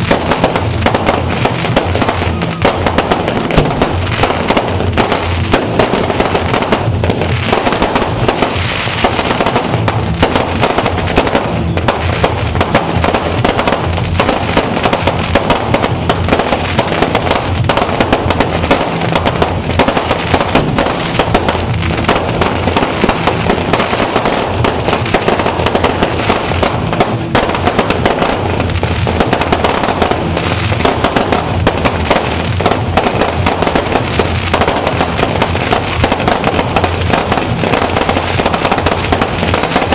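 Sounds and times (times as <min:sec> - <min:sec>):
fireworks crackling: 0:00.0 - 0:39.9.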